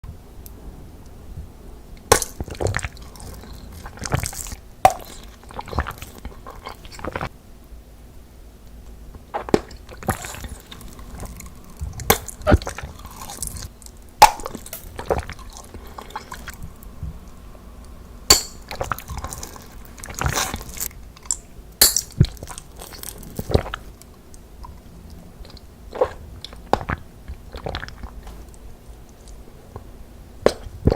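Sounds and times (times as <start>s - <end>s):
water splashing and squelching: 2.1s - 7.3s.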